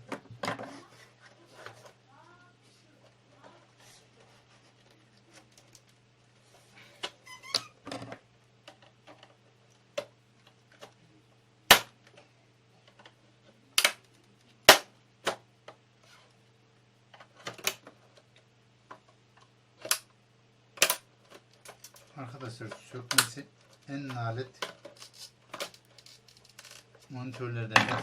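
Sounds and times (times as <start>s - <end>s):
faint low hum: 0.0s - 28.0s
plastic clips snapping: 13.8s - 14.1s.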